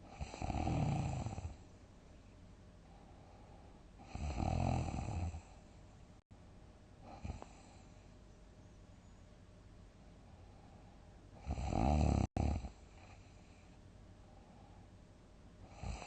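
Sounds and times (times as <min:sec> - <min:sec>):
person snoring heavily: 0:00.1 - 0:01.6, 0:04.0 - 0:05.5, 0:11.4 - 0:12.8, 0:15.7 - 0:16.0
faint breath: 0:02.1 - 0:04.2, 0:07.0 - 0:08.2, 0:10.0 - 0:11.4, 0:12.7 - 0:16.0.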